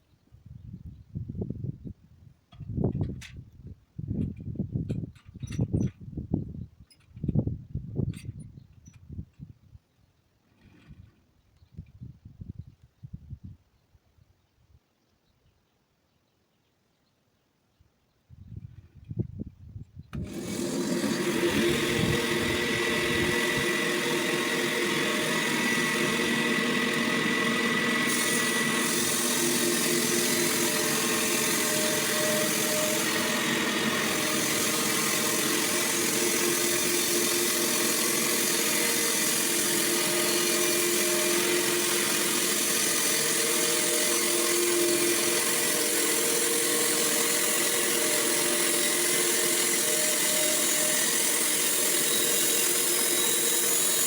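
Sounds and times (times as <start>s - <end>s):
sawmill machine drone: 20.2s - 54.0s.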